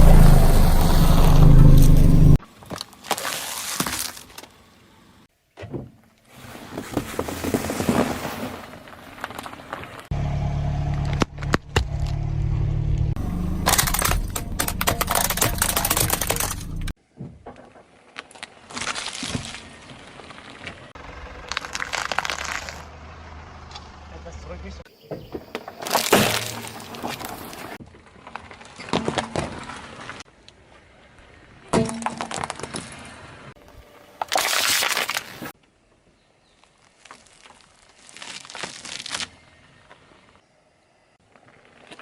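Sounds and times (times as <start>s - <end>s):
objects crunching under car tyre: 0.0s - 4.6s, 6.4s - 10.1s, 13.2s - 22.9s, 25.2s - 30.3s, 31.8s - 33.4s, 34.1s - 35.6s, 36.6s - 40.1s.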